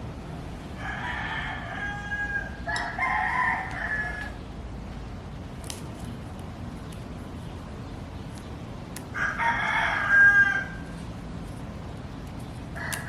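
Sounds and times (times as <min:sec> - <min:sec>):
low background noise: 0:00.0 - 0:13.0
rooster crowing: 0:00.8 - 0:04.4, 0:09.1 - 0:10.9, 0:12.8 - 0:13.0.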